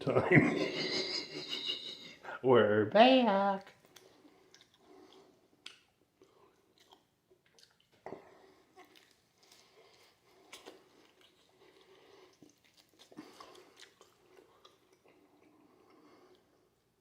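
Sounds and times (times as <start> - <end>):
man chewing: 3.7 - 17.0.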